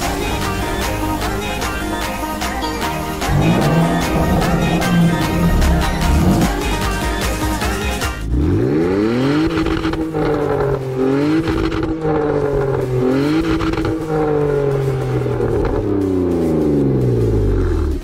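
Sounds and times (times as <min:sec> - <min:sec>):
car engine accelerating: 0:03.1 - 0:18.0.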